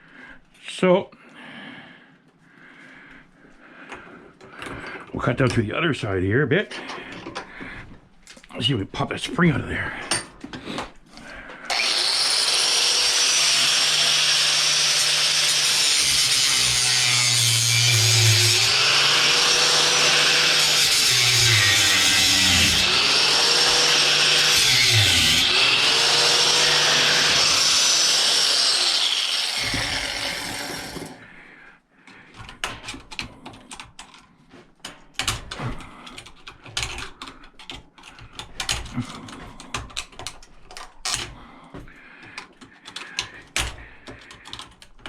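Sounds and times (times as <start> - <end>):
power tool cutting metal: 11.7 - 31.2
metal parts clicking and knocking: 32.4 - 41.4, 42.2 - 45.0.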